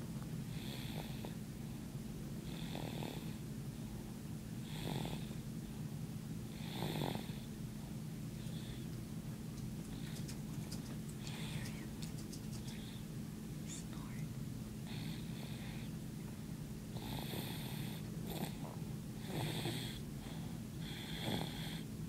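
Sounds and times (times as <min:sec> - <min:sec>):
steady low hum: 0:00.0 - 0:22.0
baby snoring: 0:02.5 - 0:03.4, 0:04.6 - 0:05.4, 0:06.5 - 0:07.5, 0:16.9 - 0:21.8.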